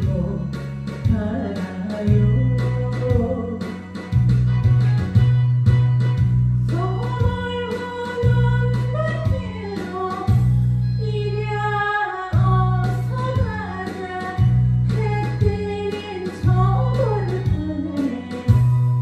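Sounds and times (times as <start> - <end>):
woman singing: 0.0 - 3.8, 6.6 - 18.7
backing track with strong bass: 0.0 - 19.0.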